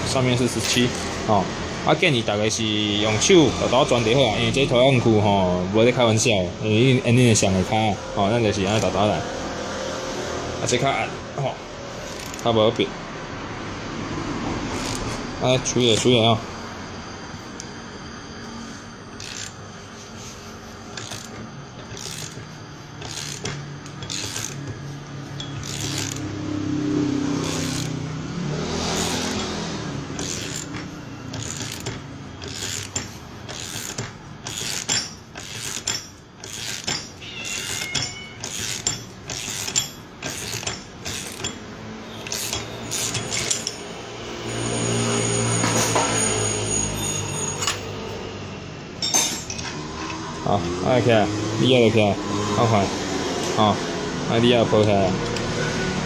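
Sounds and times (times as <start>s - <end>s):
wrench clicking metallically: 0.0s - 1.3s, 8.6s - 9.1s, 11.9s - 12.9s, 14.7s - 15.2s, 19.1s - 46.3s.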